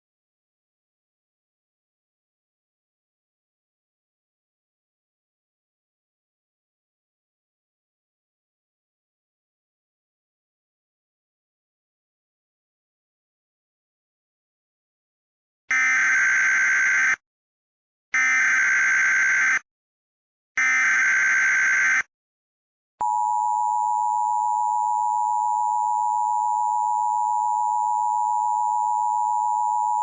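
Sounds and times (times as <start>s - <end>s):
two-tone attention signal: 23.0s - 30.0s.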